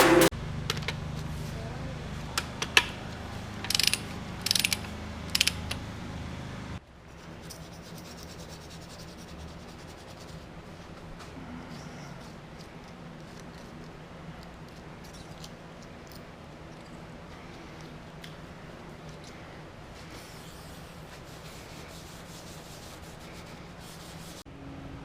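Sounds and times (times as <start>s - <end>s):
hand ratchet clicking: 3.7s - 5.6s.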